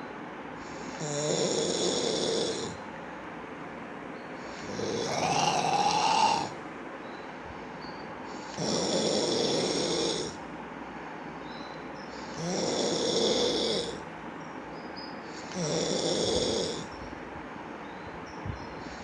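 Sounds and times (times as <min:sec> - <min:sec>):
long snores: 0:00.6 - 0:02.8, 0:04.4 - 0:06.6, 0:08.3 - 0:10.4, 0:12.2 - 0:14.0, 0:15.4 - 0:16.9
quiet breathing: 0:00.6 - 0:02.9, 0:04.3 - 0:06.6, 0:07.2 - 0:14.1.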